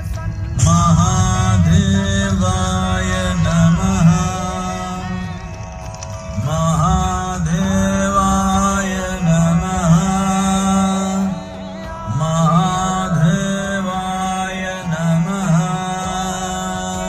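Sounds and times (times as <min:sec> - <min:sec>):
steady drone: 0:00.0 - 0:17.0
voice chanting: 0:00.0 - 0:17.0.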